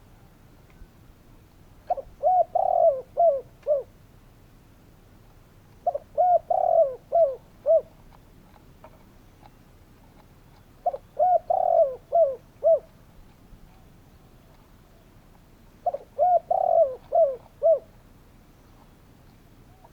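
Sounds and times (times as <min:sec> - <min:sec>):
dove cooing: 0:01.8 - 0:04.0, 0:05.8 - 0:08.0, 0:10.8 - 0:13.0, 0:15.8 - 0:18.1, 0:19.6 - 0:19.9.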